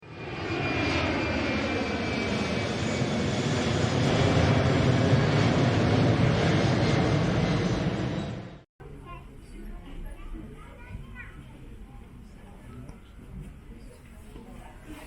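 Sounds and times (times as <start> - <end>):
jet engines running: 0.0 - 8.7.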